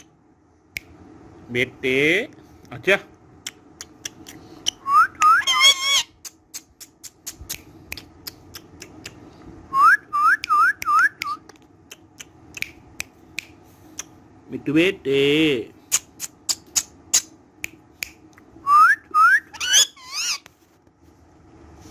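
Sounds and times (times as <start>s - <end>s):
parakeet whistling: 4.8s - 6.1s, 18.6s - 20.4s.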